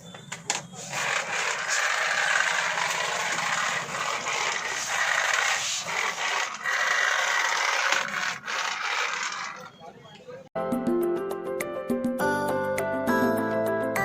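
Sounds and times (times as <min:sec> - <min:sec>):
toy car motor whirring: 0:00.4 - 0:09.8.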